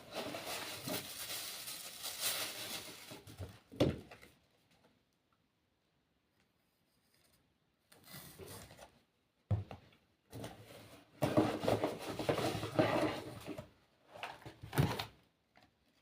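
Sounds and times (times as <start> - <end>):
packaging rustling: 0.0 - 3.5.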